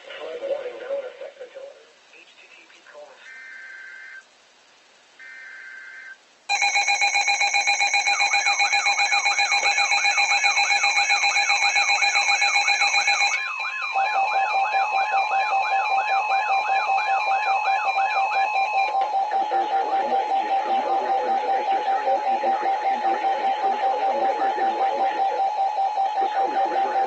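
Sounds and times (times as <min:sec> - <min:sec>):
loud warbling alert tone: 0:12.7 - 0:27.0.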